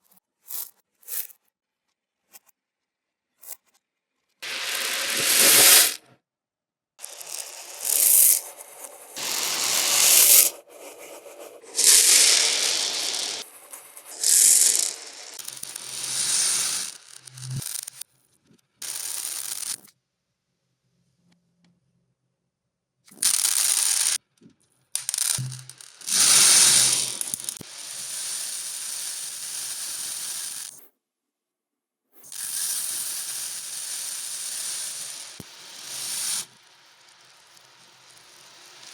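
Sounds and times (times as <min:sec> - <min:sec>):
plastic beads pouring and rattling: 0:04.4 - 0:06.0, 0:07.0 - 0:18.0, 0:18.8 - 0:19.8, 0:23.2 - 0:24.2, 0:25.0 - 0:28.3.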